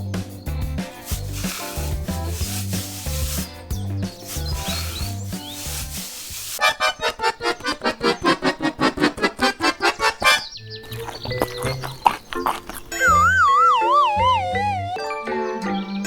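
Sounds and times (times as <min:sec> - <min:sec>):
background music with bass line: 0:00.0 - 0:06.2.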